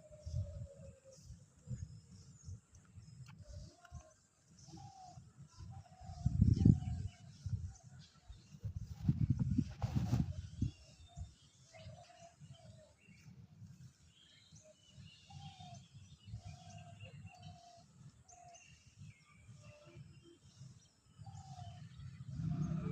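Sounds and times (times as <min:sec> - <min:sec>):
low rumble: 0:22.1 - 0:22.9.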